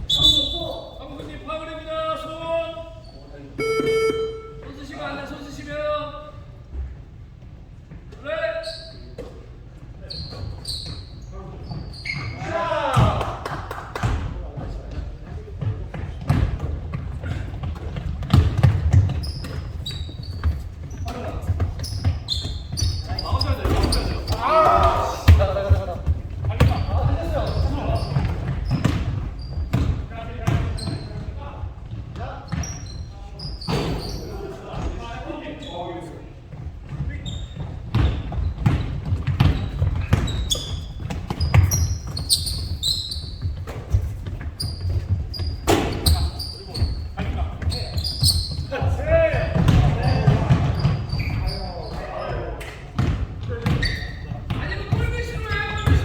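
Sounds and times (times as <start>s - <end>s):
shoe squeaks: 0.0s - 1.1s, 2.9s - 5.0s, 8.4s - 12.6s, 18.3s - 25.8s, 26.6s - 30.0s, 30.6s - 31.5s, 32.2s - 36.1s, 36.9s - 52.8s, 53.6s - 56.0s
basketballs bouncing on court: 3.6s - 4.6s, 10.2s - 35.0s, 36.5s - 56.0s
footsteps on gym court: 3.6s - 5.0s, 6.3s - 56.0s.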